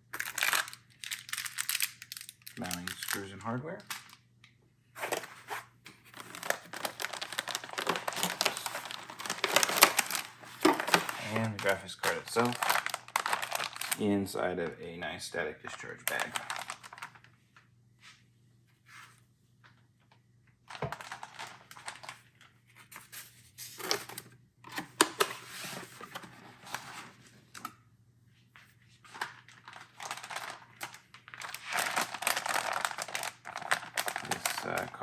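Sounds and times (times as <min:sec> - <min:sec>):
plastic bag and foam crinkling: 0:00.1 - 0:04.2, 0:05.0 - 0:14.5, 0:15.7 - 0:17.4, 0:20.7 - 0:24.2, 0:29.0 - 0:35.0.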